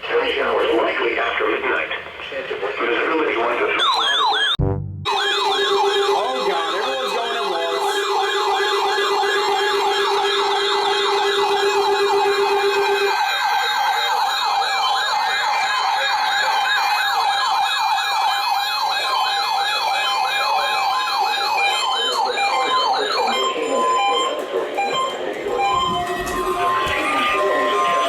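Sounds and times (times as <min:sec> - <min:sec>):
warbling weather radio alarms: 0:02.8 - 0:28.0
steady low tone: 0:04.6 - 0:05.1.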